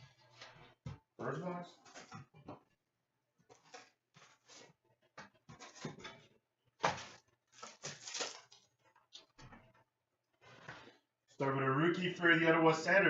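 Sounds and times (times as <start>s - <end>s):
packaging rustling and tearing: 6.8s - 8.8s.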